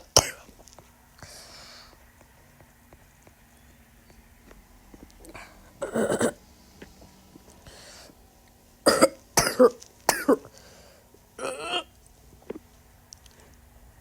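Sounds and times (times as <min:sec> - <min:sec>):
person coughing: 0:00.0 - 0:00.5, 0:05.8 - 0:06.4, 0:08.9 - 0:10.5, 0:11.4 - 0:11.9.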